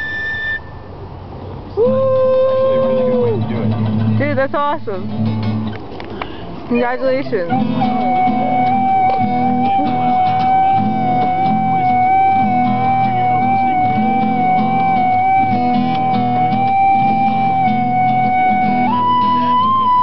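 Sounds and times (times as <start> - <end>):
long held high note: 7.5 - 20.0
low chord pattern: 7.5 - 20.0.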